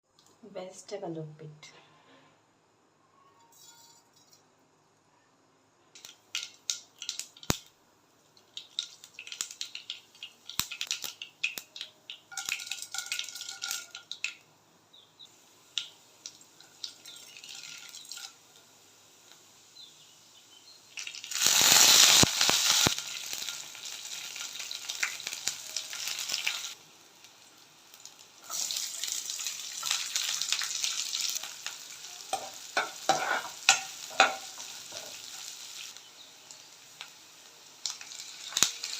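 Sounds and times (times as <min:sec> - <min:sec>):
crackles and clicks: 0:06.0 - 0:14.5, 0:15.2 - 0:19.9, 0:20.9 - 0:38.9
food sizzling in oil: 0:06.0 - 0:38.9.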